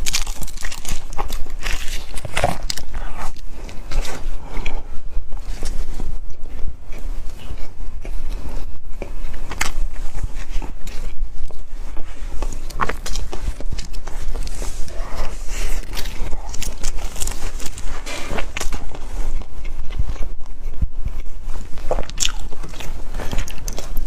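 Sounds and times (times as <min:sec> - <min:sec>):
chewing crunchy snack: 0:00.0 - 0:24.0.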